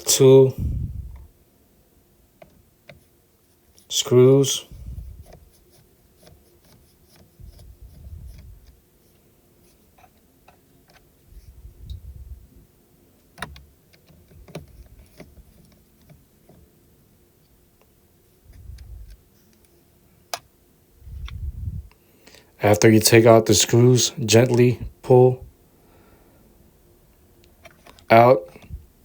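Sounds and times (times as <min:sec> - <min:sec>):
hands handling parts: 0:24.3 - 0:25.1.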